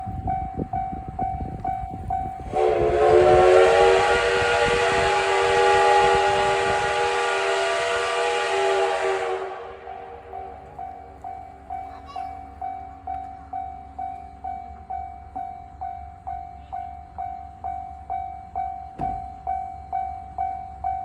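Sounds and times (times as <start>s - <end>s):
level-crossing warning bell: 0.0s - 21.0s
steam locomotive whistle blast: 2.4s - 10.8s.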